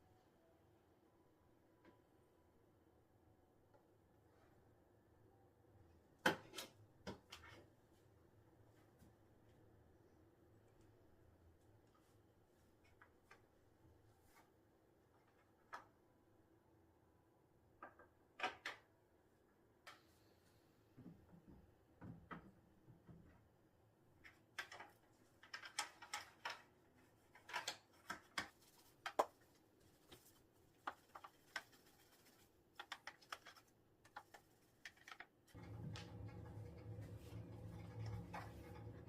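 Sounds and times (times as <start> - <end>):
steady low hum: 35.6 - 39.0.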